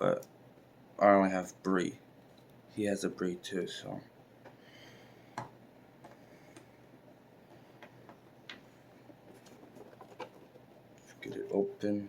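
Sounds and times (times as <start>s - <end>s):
faint clicks and taps: 5.3s - 6.7s, 7.4s - 11.6s.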